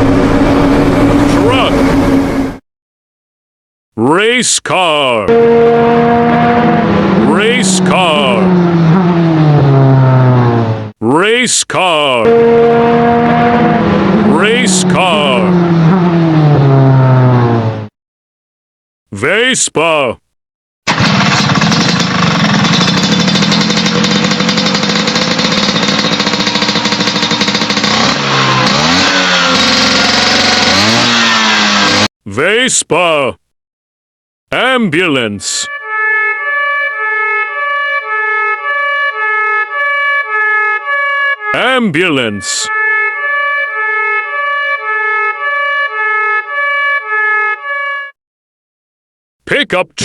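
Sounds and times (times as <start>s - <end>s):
two-tone ambulance siren: 0.0s - 2.6s, 5.2s - 10.9s, 12.1s - 17.9s, 24.6s - 32.1s, 35.5s - 48.2s
scooter engine puttering: 20.9s - 32.1s.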